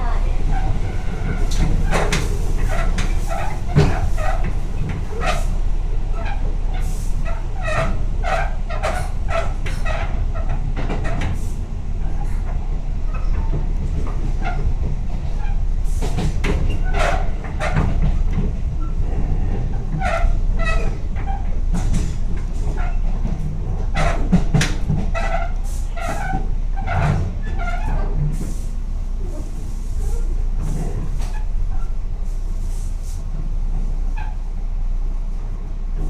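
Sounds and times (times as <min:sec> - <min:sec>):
creaking squeals from gangway: 0:15.3 - 0:18.0, 0:18.8 - 0:21.6, 0:25.1 - 0:28.2.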